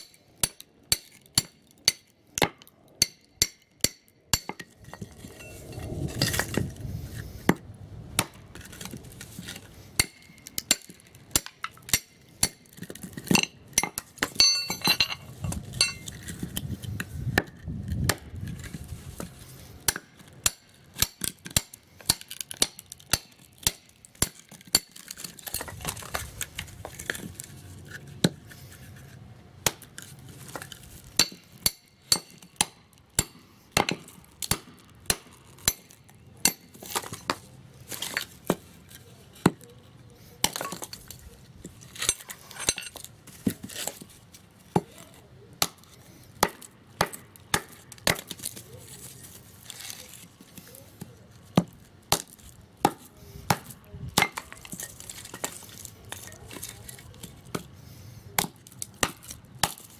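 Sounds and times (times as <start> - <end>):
low rustling handling noise: 4.7 - 11.2, 14.1 - 20.4, 25.1 - 31.2, 48.4 - 52.7
hard objects clinking and knocking: 13.1 - 16.2.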